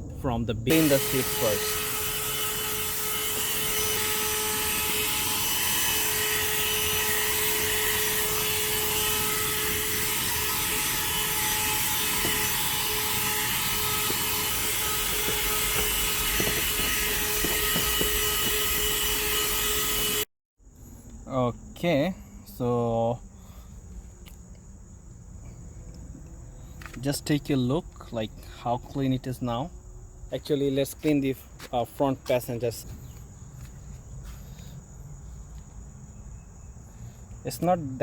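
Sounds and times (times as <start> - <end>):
handheld vacuum whining: 0.7 - 20.3.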